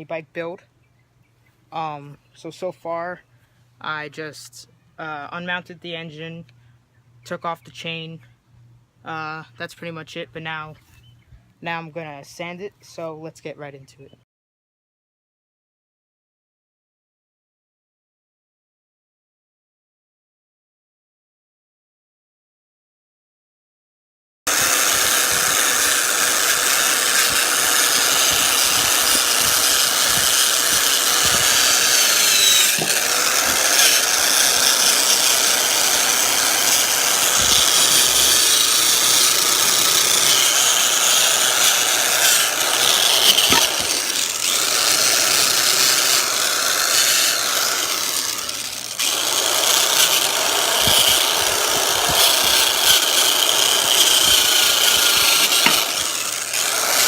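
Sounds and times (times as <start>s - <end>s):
power sander on metal: 24.5s - 57.0s.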